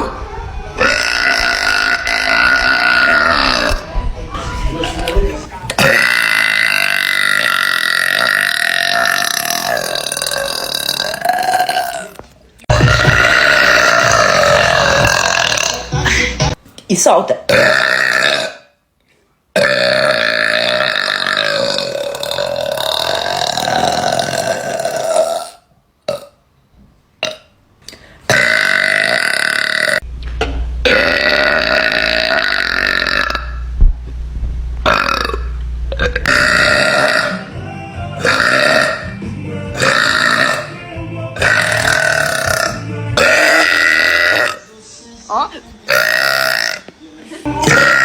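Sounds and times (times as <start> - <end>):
girl burping loudly: 0.8 - 3.9, 5.8 - 16.1, 17.5 - 18.8, 19.6 - 26.4, 28.3 - 30.0, 30.8 - 33.6, 34.8 - 37.4, 38.2 - 39.0, 39.8 - 40.7, 41.4 - 44.7, 45.9 - 46.9, 47.5 - 48.0.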